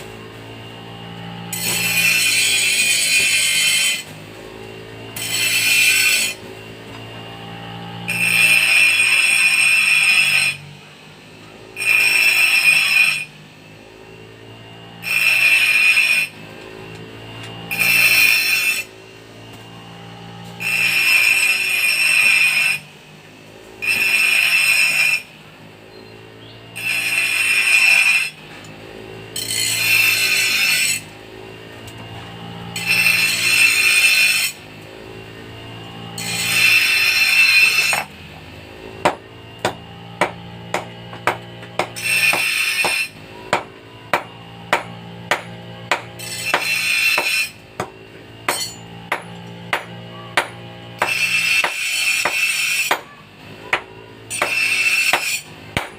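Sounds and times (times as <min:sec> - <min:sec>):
metal being filed: 0:00.0 - 0:10.9, 0:11.5 - 0:13.4, 0:14.6 - 0:22.9, 0:23.8 - 0:25.4, 0:26.7 - 0:55.9
hammer blows on anvil: 0:48.5 - 0:55.9.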